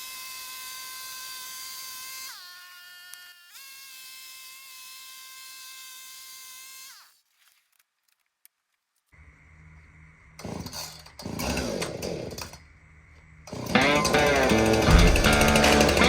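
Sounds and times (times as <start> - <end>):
small gas engine idling and revving: 10.4 - 12.6, 13.5 - 16.0
high whine winding down: 13.5 - 16.0
music: 13.8 - 16.0.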